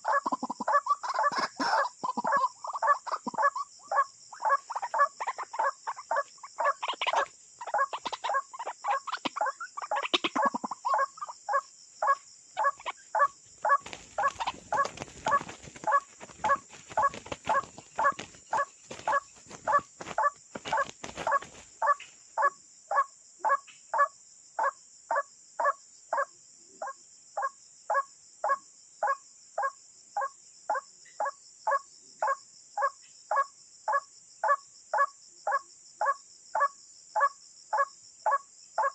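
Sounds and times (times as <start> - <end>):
bird harsh calls: 0.0 - 24.7.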